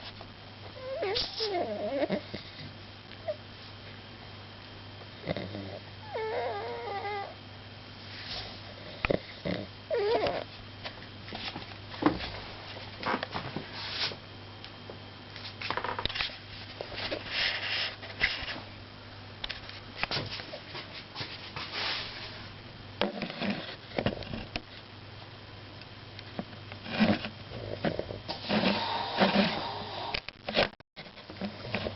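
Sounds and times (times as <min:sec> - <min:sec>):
snoring and snuffling breaths: 0:05.2 - 0:07.2, 0:26.9 - 0:30.3.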